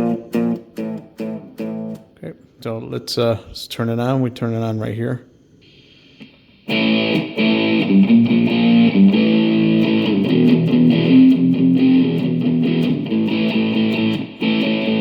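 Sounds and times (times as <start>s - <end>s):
electric guitar chords: 0.0s - 2.2s, 6.3s - 15.0s.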